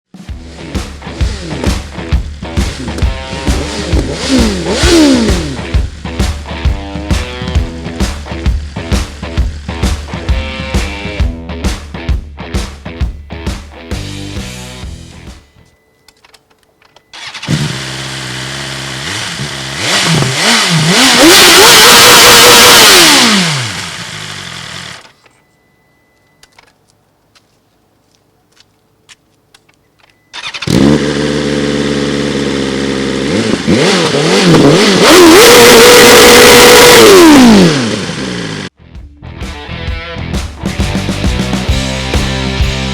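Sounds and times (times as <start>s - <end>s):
motorcycle engine revving: 0.3s - 11.3s, 17.2s - 25.2s, 30.4s - 38.7s
motorcycle engine starting: 0.3s - 11.3s, 17.1s - 25.4s, 30.3s - 38.7s.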